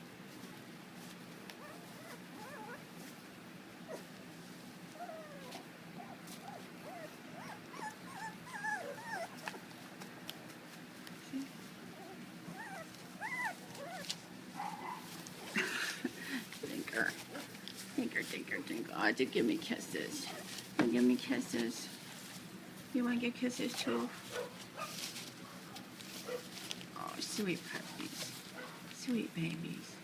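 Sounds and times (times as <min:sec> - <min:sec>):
low steady hum: 0:00.0 - 0:30.0
puppies whimpering: 0:01.6 - 0:02.8, 0:05.0 - 0:09.6, 0:12.0 - 0:14.2.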